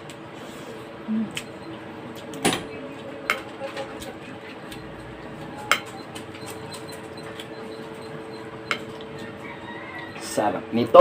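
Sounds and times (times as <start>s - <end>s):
spoon and dishes clinking: 5.7s - 6.6s, 8.6s - 9.1s.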